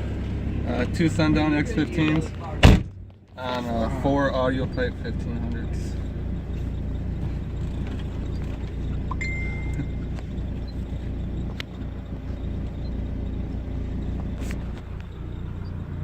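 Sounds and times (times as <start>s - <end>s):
short high beep: 9.1s - 10.1s.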